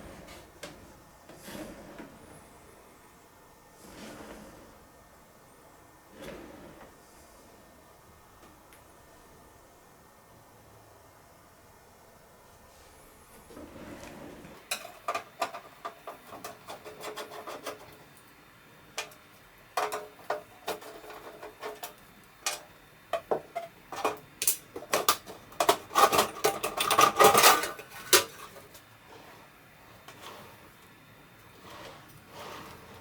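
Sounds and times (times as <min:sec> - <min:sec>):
computer parts clicking and clattering: 0:19.8 - 0:28.7.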